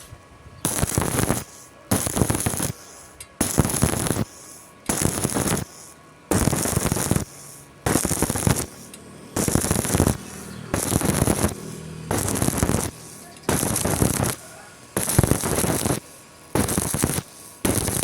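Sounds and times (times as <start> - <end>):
welding arc crackling: 0.0 - 18.0.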